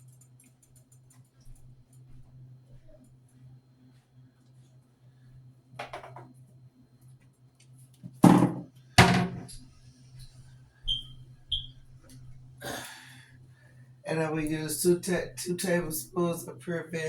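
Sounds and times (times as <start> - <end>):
loud thunks of objects set down: 8.2 - 9.5
steady low hum: 8.3 - 17.0.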